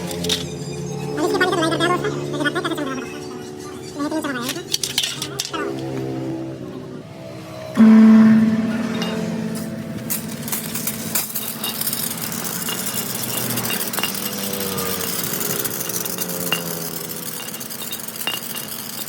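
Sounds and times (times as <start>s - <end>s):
metallic clinks of tools: 8.8s - 19.0s.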